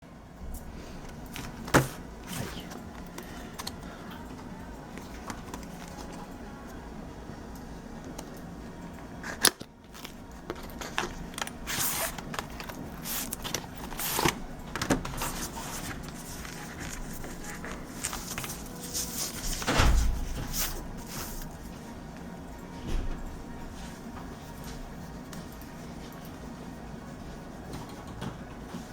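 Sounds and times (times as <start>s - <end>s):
packaging rustling and clicking: 4.9s - 6.2s, 9.2s - 21.6s.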